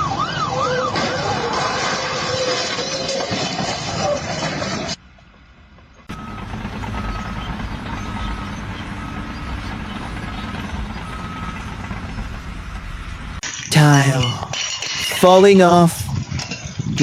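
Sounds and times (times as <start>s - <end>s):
heavy vehicle engine running: 5.6s - 13.4s
faint reversing alarm beeping: 6.1s - 13.2s.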